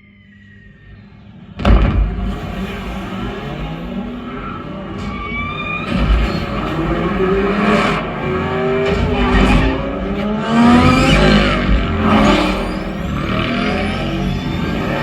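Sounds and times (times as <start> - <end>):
tires squealing: 0.0 - 15.0
car engines revving: 1.2 - 15.0
heavy bass hits: 1.6 - 3.2, 8.9 - 13.3.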